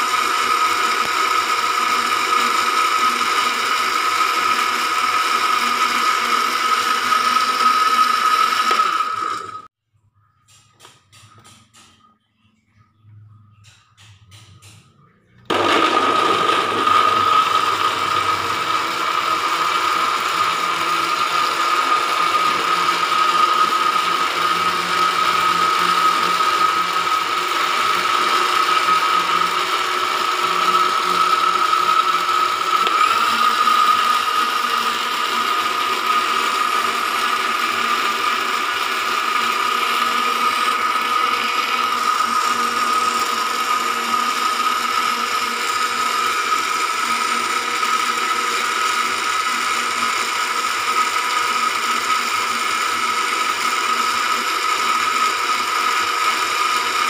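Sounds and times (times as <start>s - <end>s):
blender motor whirring: 0.0s - 9.8s, 15.4s - 57.0s.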